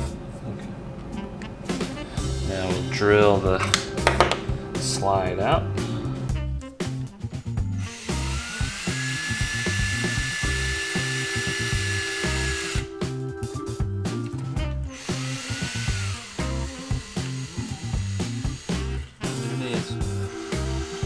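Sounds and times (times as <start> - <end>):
background music with steady beat: 1.0 - 21.0
power drill whine: 7.7 - 13.0, 14.3 - 21.0.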